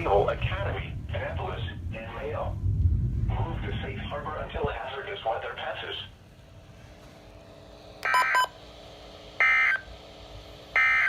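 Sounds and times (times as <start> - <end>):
warbling digital tone bursts: 8.0 - 8.5.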